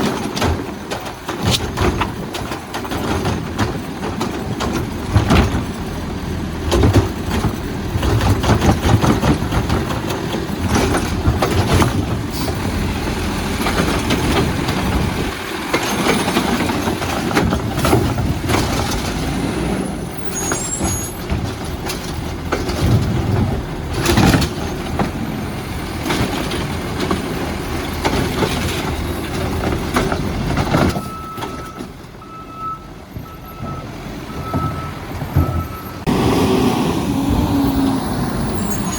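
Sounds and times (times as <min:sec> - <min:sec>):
bins banging and clattering: 0:00.0 - 0:36.5
garbage truck engine under load: 0:00.0 - 0:38.9
beeping alarm: 0:31.0 - 0:36.0.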